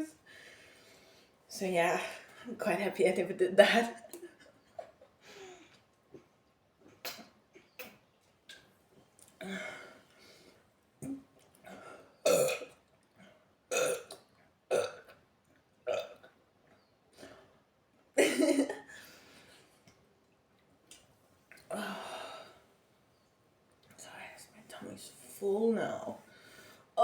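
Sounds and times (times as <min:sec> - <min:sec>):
woman burping: 0:12.2 - 0:12.8, 0:13.7 - 0:15.2, 0:15.9 - 0:16.3.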